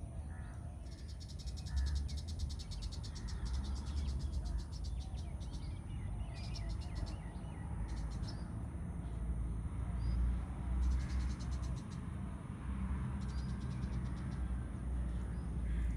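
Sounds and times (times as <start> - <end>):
steady low rumble: 13.2 - 15.9.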